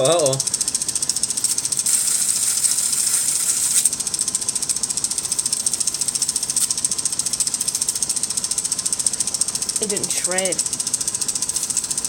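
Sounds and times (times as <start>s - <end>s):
toy shredder gears clicking: 0.0s - 12.0s.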